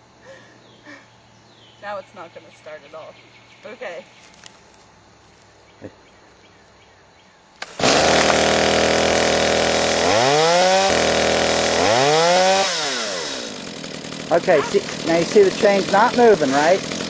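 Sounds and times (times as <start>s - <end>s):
chainsaw engine revving: 7.6s - 17.0s
starter rope pull: 7.6s - 17.0s.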